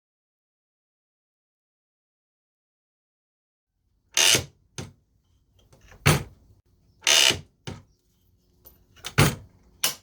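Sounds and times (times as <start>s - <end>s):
metal tools scraping and clattering: 8.1s - 10.0s.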